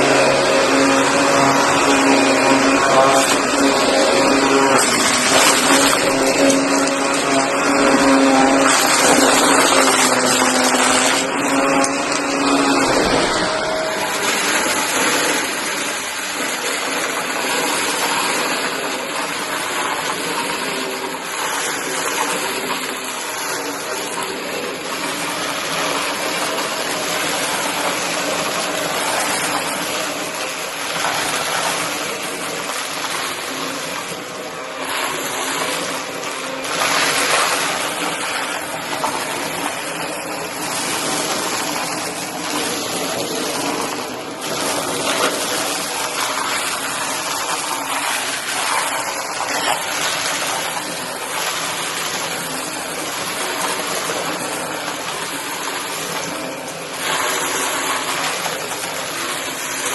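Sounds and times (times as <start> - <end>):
cardboard scraps being sucked up: 0.0 - 22.8
vacuum cleaner running: 0.0 - 59.9.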